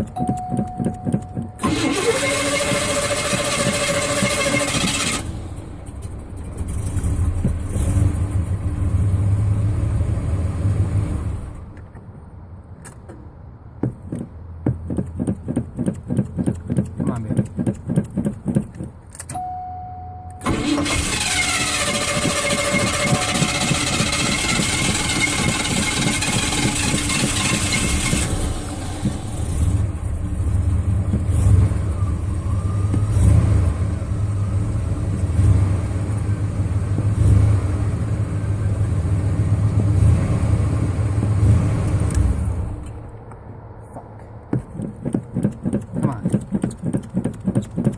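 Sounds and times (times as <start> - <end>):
engine running unevenly: 0.0 - 11.7, 20.4 - 43.3
starter cranking engine: 1.4 - 8.6, 20.4 - 33.8.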